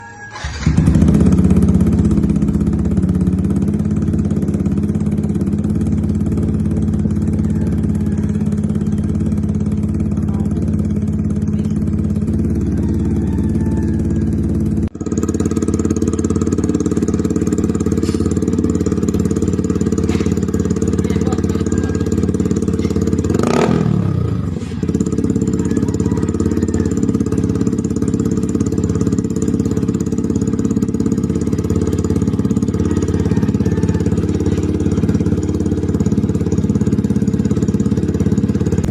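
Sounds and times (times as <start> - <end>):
motorcycle engine idling: 0.0 - 38.9
engine revving: 0.3 - 38.9.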